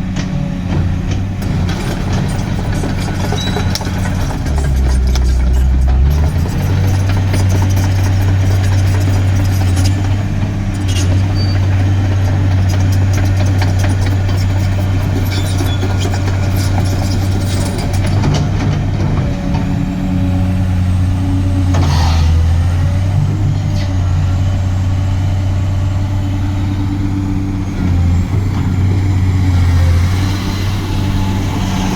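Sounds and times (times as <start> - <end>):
excavator diesel engine humming: 0.0 - 31.9.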